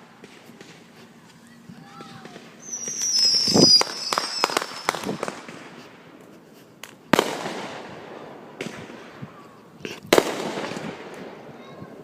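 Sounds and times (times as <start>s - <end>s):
crackling firework pops: 0.0s - 7.9s, 8.6s - 9.2s, 9.9s - 11.4s
firework whistle falling in pitch: 2.6s - 5.0s.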